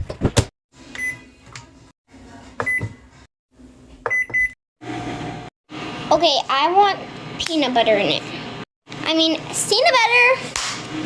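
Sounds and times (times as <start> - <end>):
microwave humming: 2.7 - 11.0
keypad beeps: 4.1 - 4.5.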